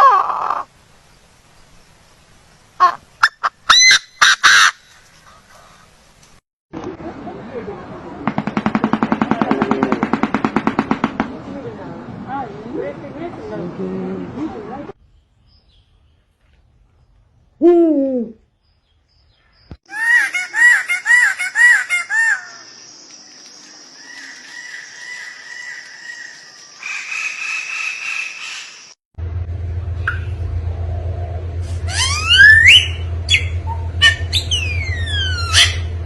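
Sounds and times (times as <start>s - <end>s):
bird calls: 18.3s - 29.0s, 31.9s - 36.0s
low steady hum: 29.2s - 36.0s.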